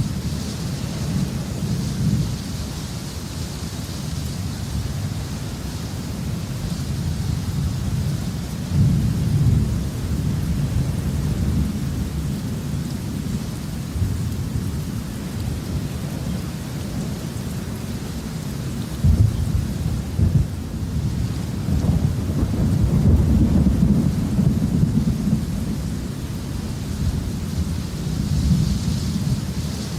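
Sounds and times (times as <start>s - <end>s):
steady rainfall: 0.0s - 29.9s
thunder rumbling: 19.0s - 29.9s.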